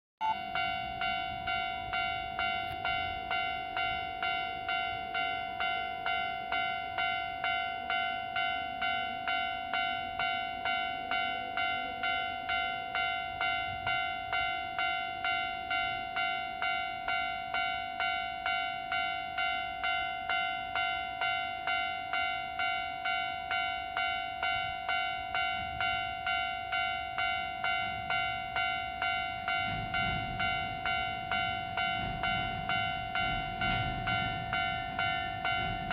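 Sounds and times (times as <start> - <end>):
level crossing bell ringing: 0.2 - 35.9
train rumble: 22.1 - 35.9.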